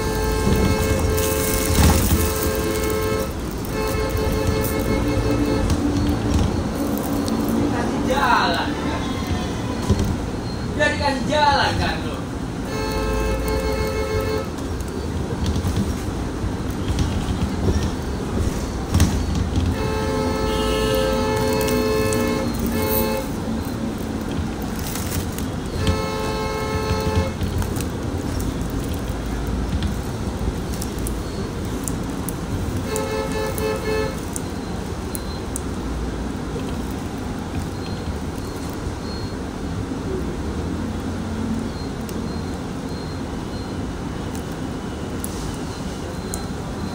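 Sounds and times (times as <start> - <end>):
bus horn blasts: 0.0 - 6.8, 12.6 - 14.7, 19.7 - 23.6, 25.5 - 28.2, 32.8 - 34.4
engine and road rumble: 0.0 - 46.9.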